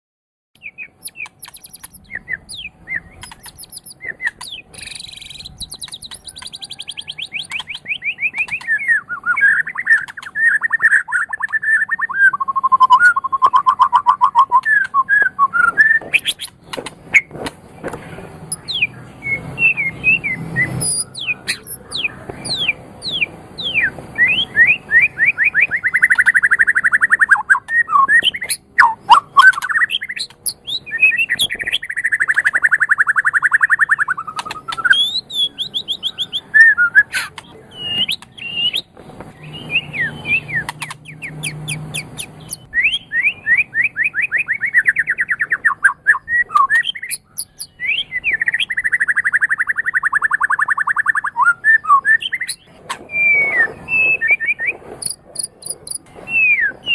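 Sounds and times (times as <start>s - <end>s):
songbird singing trills and whistles: 0.6s - 17.4s, 18.4s - 56.9s
sharp clicks: 1.0s - 8.8s, 9.5s - 10.6s, 14.4s - 18.7s, 27.6s - 30.6s, 34.1s - 35.1s, 40.6s - 42.7s, 55.0s - 56.1s.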